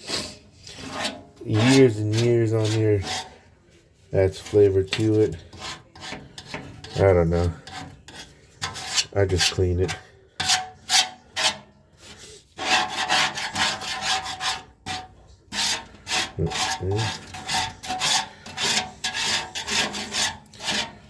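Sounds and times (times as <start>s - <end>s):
scraper rasping on metal: 0.7s - 3.4s, 4.3s - 21.0s.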